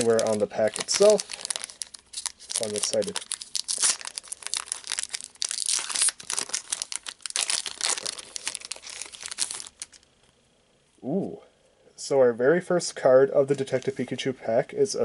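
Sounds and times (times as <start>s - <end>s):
foil wrapper crinkling and tearing: 0.0s - 10.0s.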